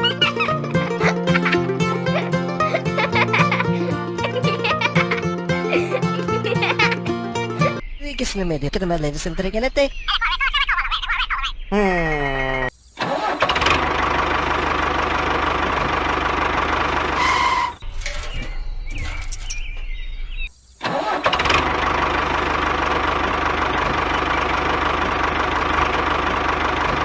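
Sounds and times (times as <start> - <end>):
engine running: 0.0 - 7.8, 13.3 - 19.7, 21.2 - 27.0.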